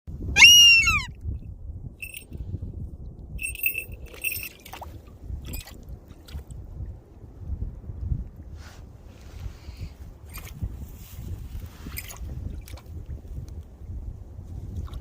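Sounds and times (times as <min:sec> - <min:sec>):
hawk wailing calls: 0:00.4 - 0:01.1.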